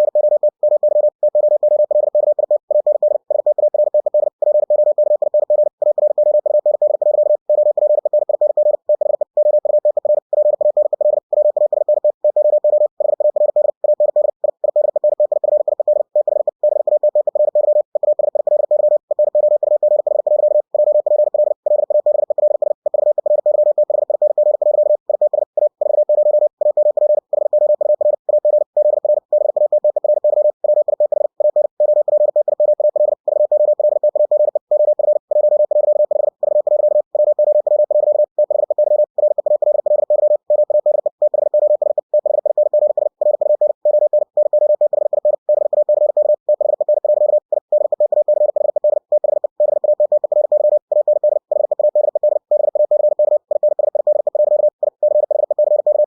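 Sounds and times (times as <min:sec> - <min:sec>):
morse code beeps: 0:00.0 - 0:56.0.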